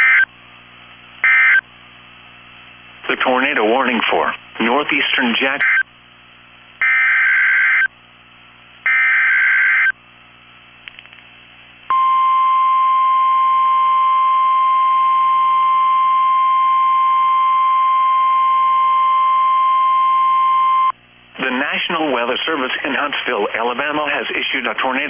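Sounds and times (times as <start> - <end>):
steady warning alarm tone: 0.0 - 0.3, 1.2 - 1.6, 5.6 - 5.9, 6.8 - 7.9, 8.9 - 10.0.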